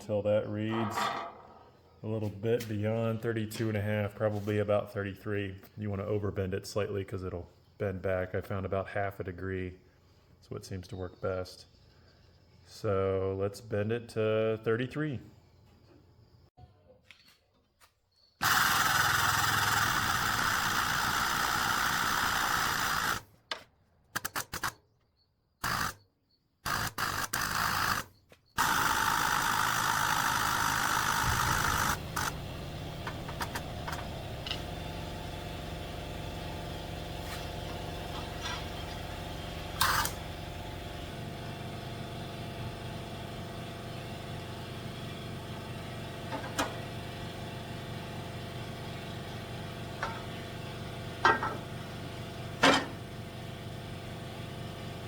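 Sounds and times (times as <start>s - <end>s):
hydraulic press power unit: 0.0s - 3.9s, 18.4s - 26.0s, 26.6s - 55.0s.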